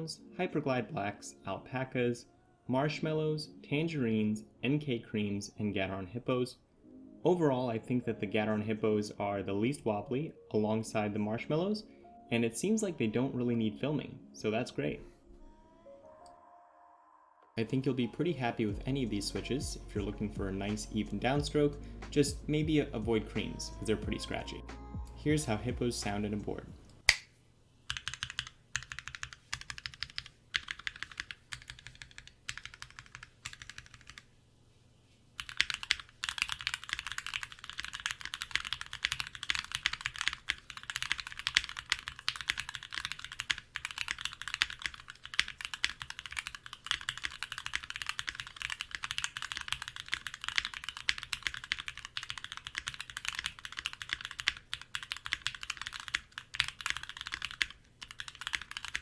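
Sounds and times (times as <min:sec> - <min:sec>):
typing on mechanical keyboard: 0:27.9 - 0:34.3, 0:35.4 - 0:59.0.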